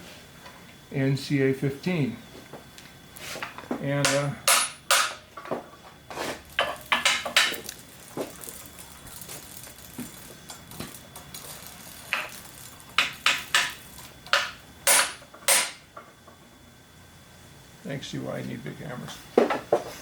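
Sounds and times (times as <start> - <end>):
hammer striking metal punch: 4.0 - 5.2, 14.3 - 15.8.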